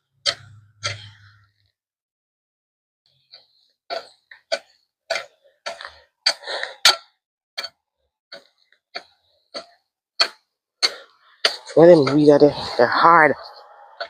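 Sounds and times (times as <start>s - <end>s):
hand tool chopping ground: 3.9s - 7.0s, 9.6s - 12.5s.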